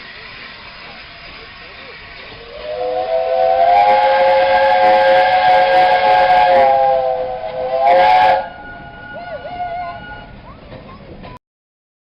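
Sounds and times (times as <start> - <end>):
steam locomotive whistle blasts: 2.4 - 10.4.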